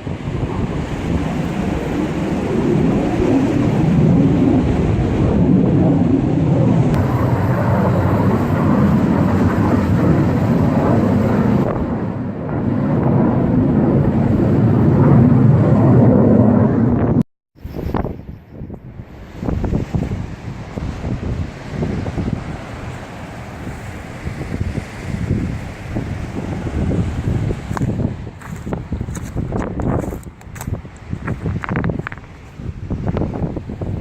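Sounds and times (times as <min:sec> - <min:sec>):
wind buffeting microphone: 0:00.0 - 0:34.0.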